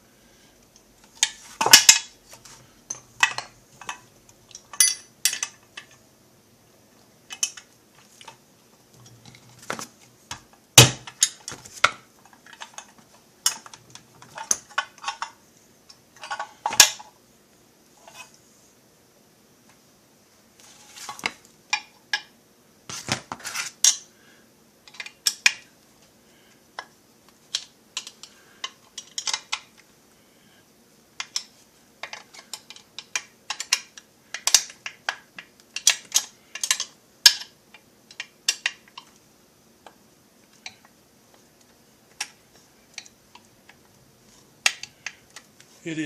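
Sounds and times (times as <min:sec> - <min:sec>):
metallic clicks of tools and parts: 0:02.9 - 0:06.0, 0:27.5 - 0:29.8, 0:35.8 - 0:37.5.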